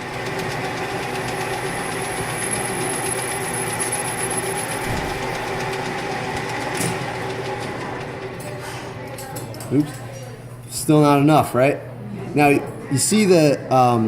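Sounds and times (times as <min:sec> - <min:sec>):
metal lathe running: 0:00.0 - 0:09.6.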